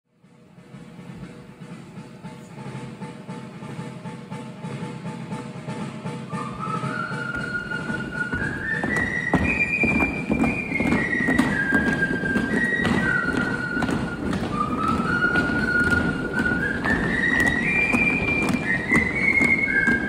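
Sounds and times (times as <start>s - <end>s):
person whistling a tune: 6.2s - 20.0s.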